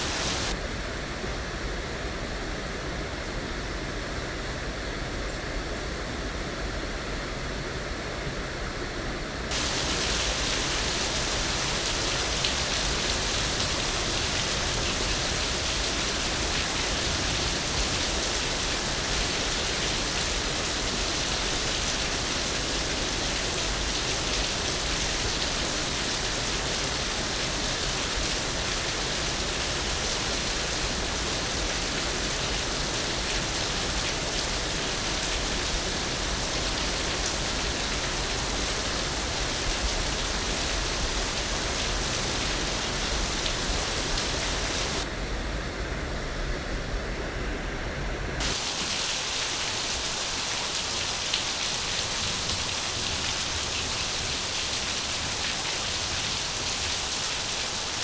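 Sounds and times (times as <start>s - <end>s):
rushing water hiss: 0.0s - 1.0s, 9.4s - 58.0s.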